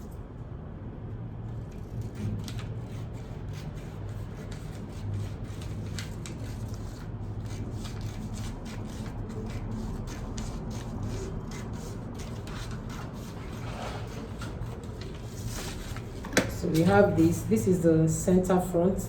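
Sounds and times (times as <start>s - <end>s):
paper rubbing: 1.6s - 16.4s.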